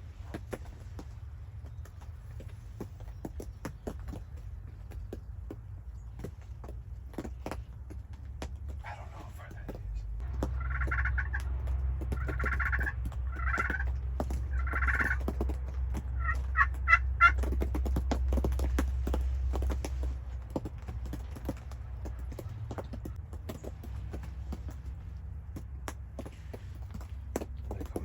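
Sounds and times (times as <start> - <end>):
low rumble: 8.1 - 28.0
turkey gobbling: 8.8 - 23.2.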